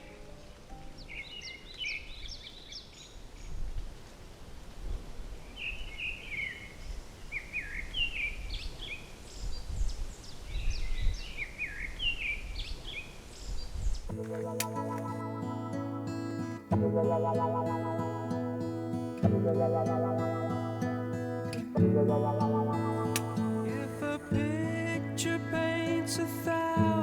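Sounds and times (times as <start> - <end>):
birds chirping: 10.5 - 27.0
guitar music: 14.1 - 27.0.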